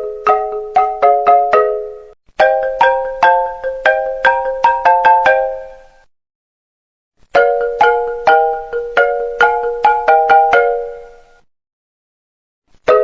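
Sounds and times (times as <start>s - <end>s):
marimba-like phone ringtone: 0.0s - 6.0s, 7.3s - 11.2s.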